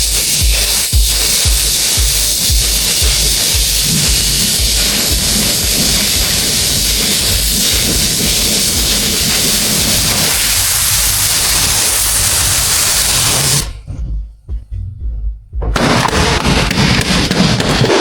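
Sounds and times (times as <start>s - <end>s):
high-pressure spray hissing: 0.0s - 13.8s.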